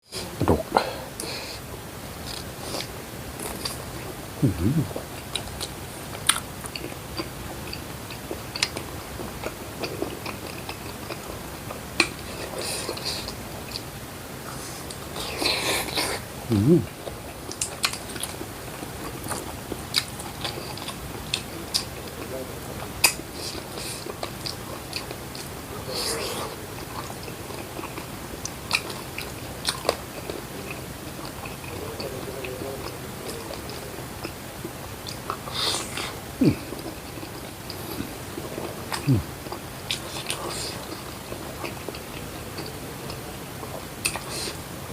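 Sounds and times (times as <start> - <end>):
person chewing food: 2.2 - 44.7
person chewing and biting: 4.4 - 8.9.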